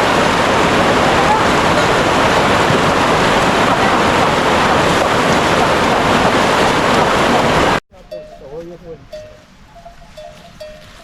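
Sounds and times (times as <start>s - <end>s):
loud steady rushing noise: 0.0s - 7.8s.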